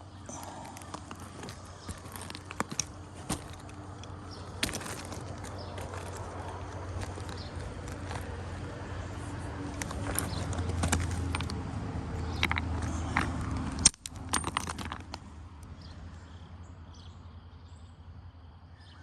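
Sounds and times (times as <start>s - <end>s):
stones clacking together: 0.3s - 8.8s, 9.7s - 15.7s.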